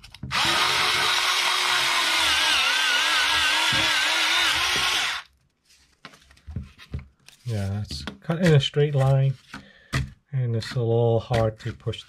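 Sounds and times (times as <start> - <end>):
electric scissors cutting cardboard: 0.3 - 5.3.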